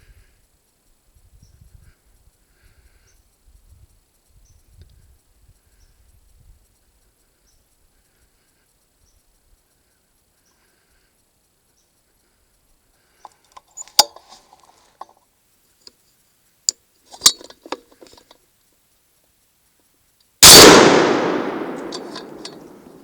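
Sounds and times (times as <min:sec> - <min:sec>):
light clicks and clinks: 0:12.6 - 0:18.4, 0:21.2 - 0:23.0
rifle shot with echo: 0:20.4 - 0:23.0.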